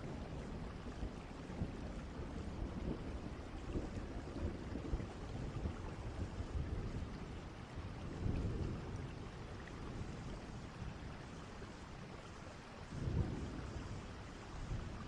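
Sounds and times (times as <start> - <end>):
steady rain: 0.0 - 15.0
thunder rumbling: 12.9 - 15.0.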